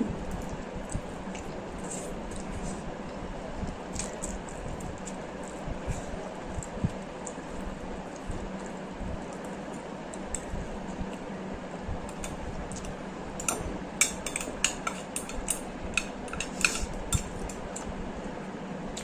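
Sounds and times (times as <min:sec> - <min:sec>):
utensils clinking against a bowl: 0:12.1 - 0:17.8.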